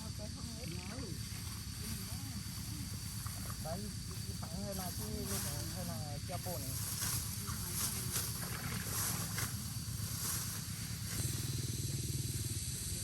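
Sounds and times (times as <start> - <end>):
small engine running: 0.0 - 13.0.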